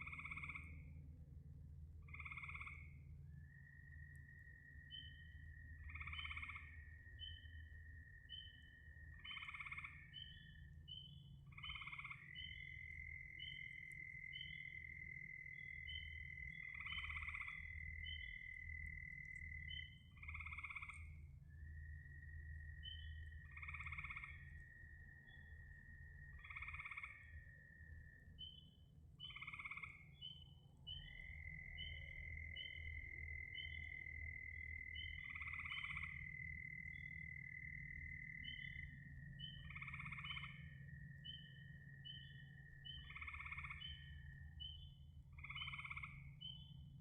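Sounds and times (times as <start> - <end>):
low steady rumble: 0.0 - 47.0
loud frog call: 2.1 - 2.9, 9.2 - 10.4, 11.5 - 21.2, 22.7 - 24.9, 26.4 - 27.6, 29.2 - 30.1, 31.1 - 44.4, 45.4 - 46.4
frog trill: 9.2 - 10.3, 11.5 - 21.1, 22.9 - 24.5, 26.4 - 27.3, 29.2 - 30.1, 31.3 - 38.8, 39.4 - 40.7, 41.3 - 44.3, 45.4 - 46.3.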